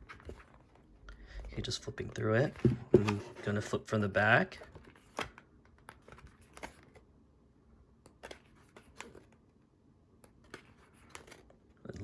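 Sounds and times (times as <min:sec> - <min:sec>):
photobook pages flipping: 0:00.0 - 0:00.9, 0:02.4 - 0:03.7, 0:04.6 - 0:07.0, 0:08.0 - 0:09.4, 0:10.2 - 0:11.7.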